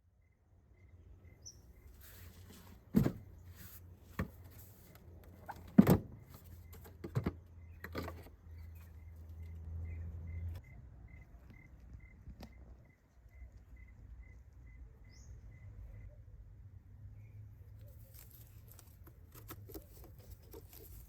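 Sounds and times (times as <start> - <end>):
insects chirping: 8.7 - 16.1.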